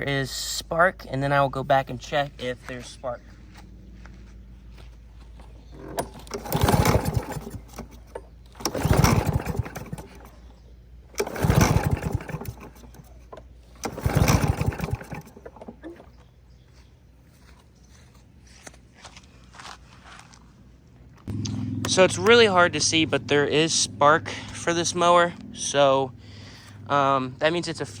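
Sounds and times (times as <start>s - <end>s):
mower pull-starter cranking: 5.2s - 16.4s, 21.2s - 25.5s.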